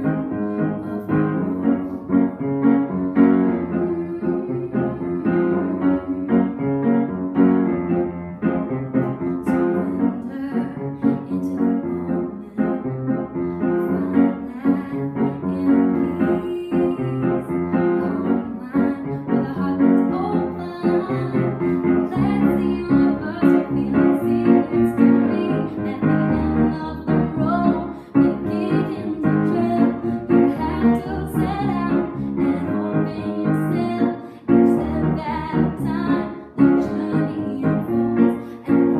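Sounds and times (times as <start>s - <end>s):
woman singing: 0.0s - 7.1s, 9.0s - 38.9s
piano playing: 0.0s - 38.9s.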